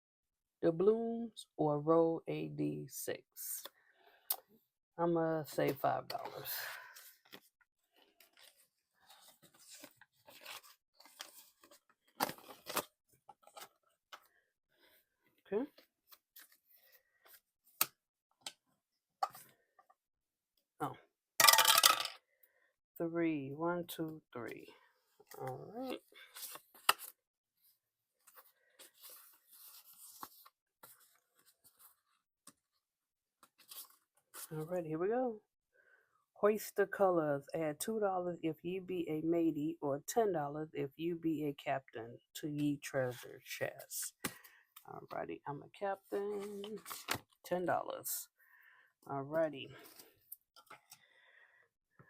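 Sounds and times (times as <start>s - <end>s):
rustling of paper bills and envelopes: 6.4s - 15.0s, 25.4s - 32.8s, 46.1s - 47.4s.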